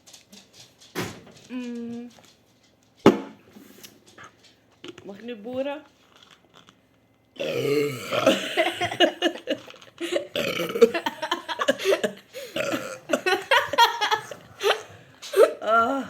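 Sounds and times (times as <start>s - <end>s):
person burping loudly: 7.4s - 13.5s.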